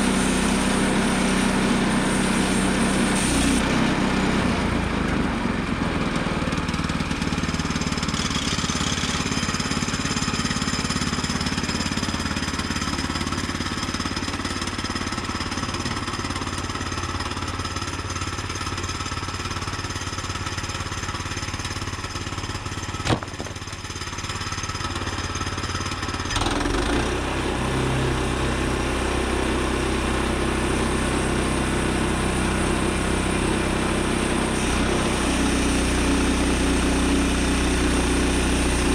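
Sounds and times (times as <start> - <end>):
sawmill engine running: 0.0 - 38.9
band blade cutting log: 0.1 - 3.7, 23.0 - 23.7, 34.5 - 38.9.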